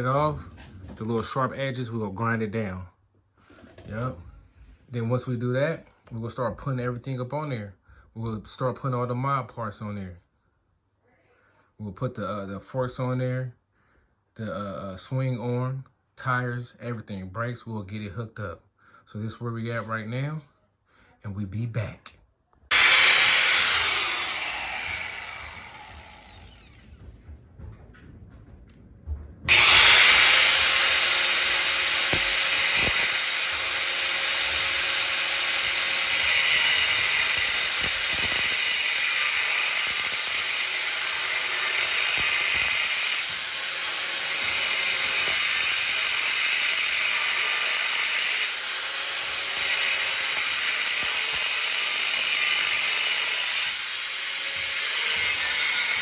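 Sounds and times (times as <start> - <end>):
angle grinder cutting metal: 22.7 - 26.9, 29.5 - 56.0.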